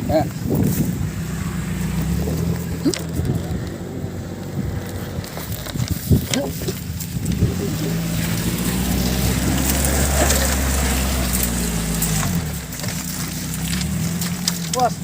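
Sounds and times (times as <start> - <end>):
small van engine pulling: 0.0 - 15.0
van bouncing over stones: 0.0 - 15.0.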